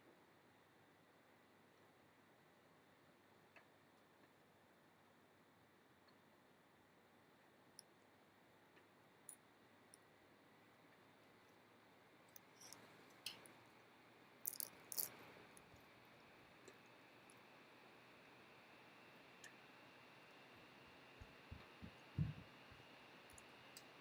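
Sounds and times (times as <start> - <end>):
faint clicks and taps: 3.5 - 4.4.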